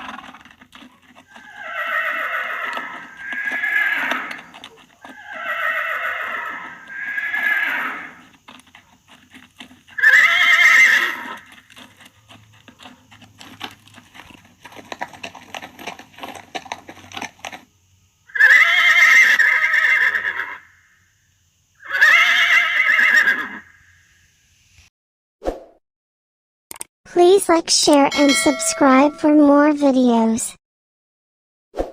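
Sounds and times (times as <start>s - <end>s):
hooves clicking: 0.0s - 17.7s
horse neighing: 1.1s - 8.2s, 9.9s - 11.5s, 18.3s - 20.6s, 21.8s - 23.7s.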